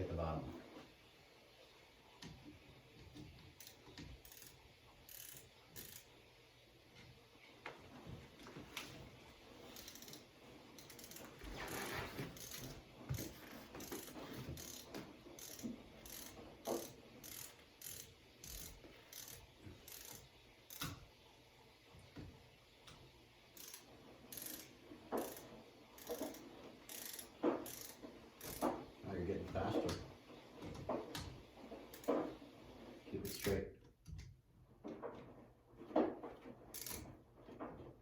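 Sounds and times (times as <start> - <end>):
ratcheting screwdriver clicking: 3.6 - 6.1, 9.8 - 10.2, 10.8 - 11.3, 12.4 - 21.0, 23.6 - 25.4, 26.0 - 28.7, 33.2 - 33.6, 36.8 - 37.1.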